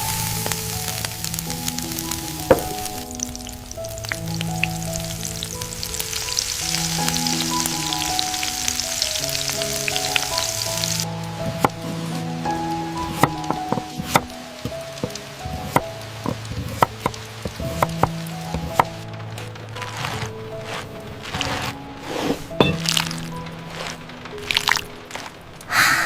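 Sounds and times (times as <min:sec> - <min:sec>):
food sizzling in hot oil: 0:00.0 - 0:18.9
soft background music: 0:00.0 - 0:26.0.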